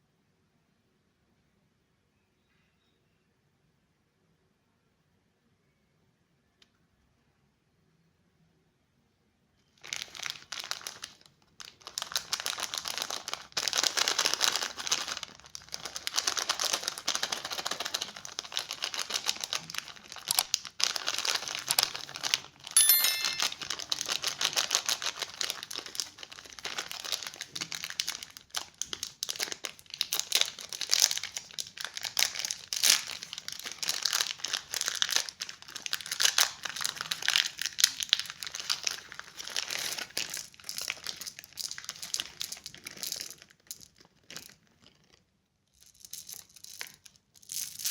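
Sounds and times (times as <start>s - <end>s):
plastic wrappers crinkling: 9.8s - 45.2s.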